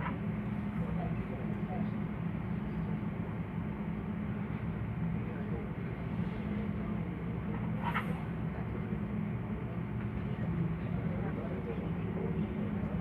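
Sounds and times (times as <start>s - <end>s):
faint background murmur: 0.0s - 13.0s
low mechanical hum: 0.0s - 13.0s.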